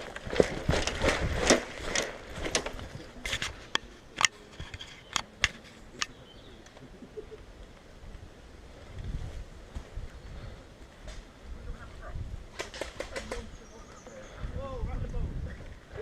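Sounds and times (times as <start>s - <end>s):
rustling and crunching: 0.0s - 6.9s.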